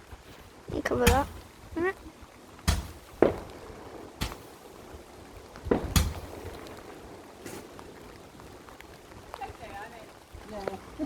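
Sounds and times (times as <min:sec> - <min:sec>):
fireworks exploding with bangs: 0:02.6 - 0:08.7.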